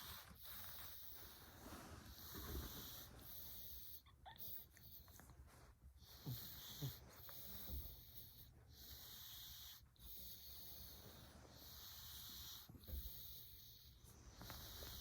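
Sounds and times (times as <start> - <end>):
cat snoring: 2.1 - 4.6, 6.0 - 15.0.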